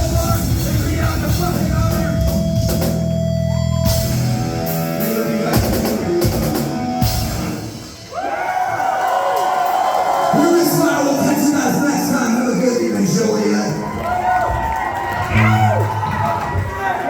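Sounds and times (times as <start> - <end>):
rock band playing: 0.0 - 8.1, 15.2 - 16.3.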